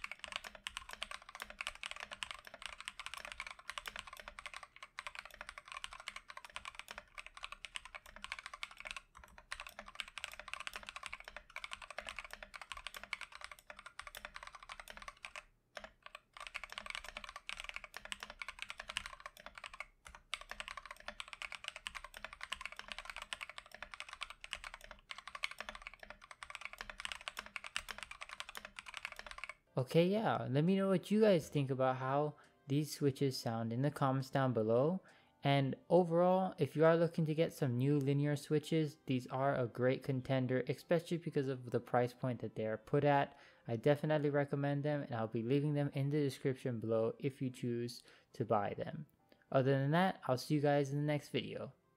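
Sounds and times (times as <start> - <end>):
typing on mechanical keyboard: 0.0 - 29.6.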